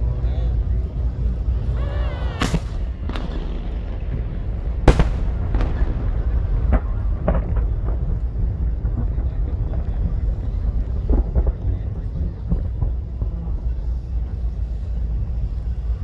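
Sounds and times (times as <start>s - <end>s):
steady low rumble: 0.0s - 16.0s
fireworks bangs: 2.2s - 9.1s.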